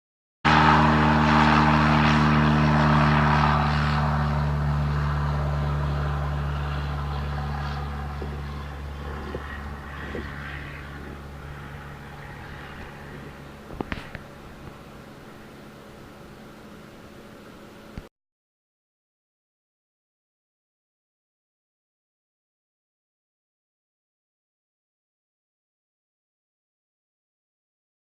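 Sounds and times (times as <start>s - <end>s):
propeller aircraft engine: 0.4s - 18.1s.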